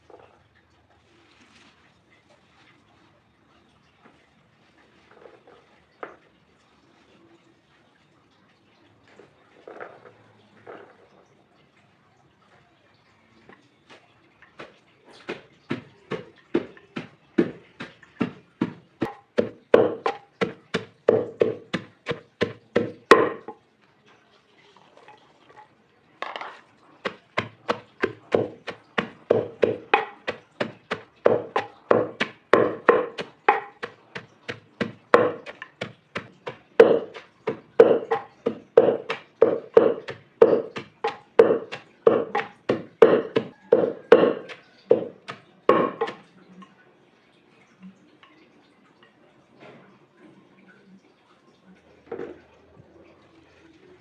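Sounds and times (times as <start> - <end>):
knife chopping on wooden board: 14.6 - 23.5, 27.1 - 46.2.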